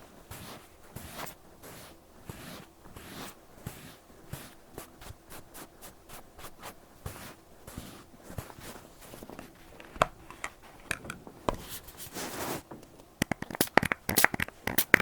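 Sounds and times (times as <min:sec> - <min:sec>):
cotton pad rubbing over ear: 0:00.3 - 0:09.3, 0:11.7 - 0:12.7.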